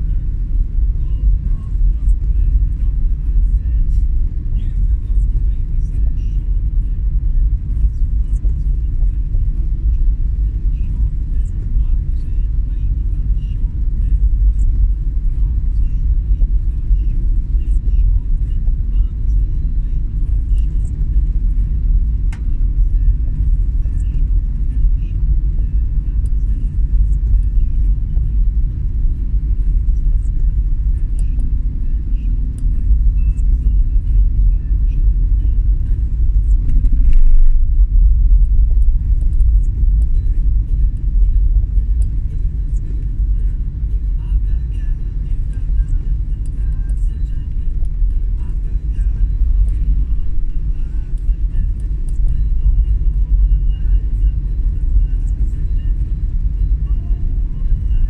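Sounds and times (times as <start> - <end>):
vehicle low rumble: 0.0 - 58.0.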